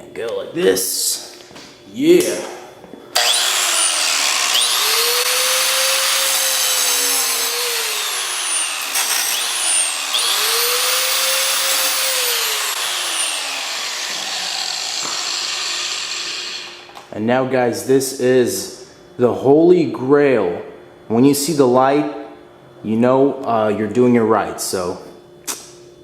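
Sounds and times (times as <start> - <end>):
angle grinder grinding metal: 3.2 - 17.0.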